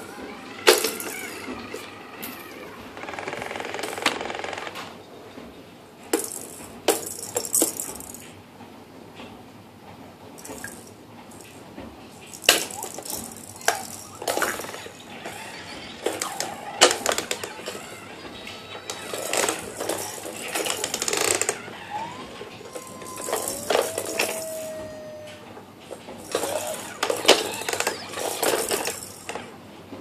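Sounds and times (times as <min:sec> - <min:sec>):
brief squeaky tones: 0:00.0 - 0:03.6, 0:13.6 - 0:25.5, 0:26.3 - 0:29.1.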